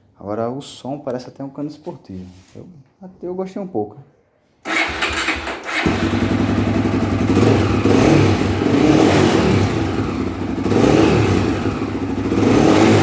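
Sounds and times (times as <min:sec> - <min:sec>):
motorcycle engine revving: 0:04.7 - 0:13.0.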